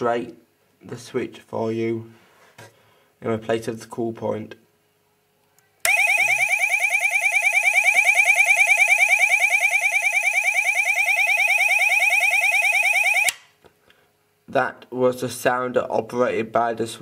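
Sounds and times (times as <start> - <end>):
fast-warbling fire alarm tone: 5.9 - 13.4.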